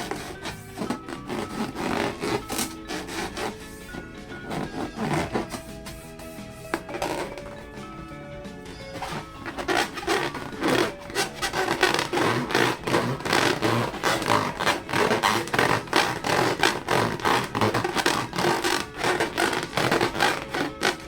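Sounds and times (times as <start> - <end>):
balloons being rubbed: 0.0 - 21.0.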